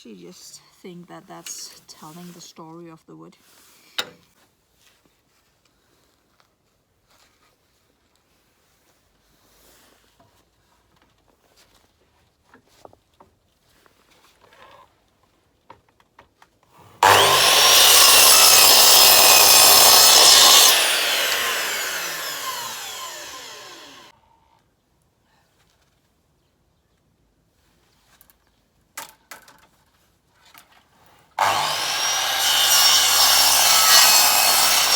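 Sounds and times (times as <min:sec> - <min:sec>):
electric saw cutting wood: 0:17.0 - 0:24.1, 0:31.4 - 0:34.9.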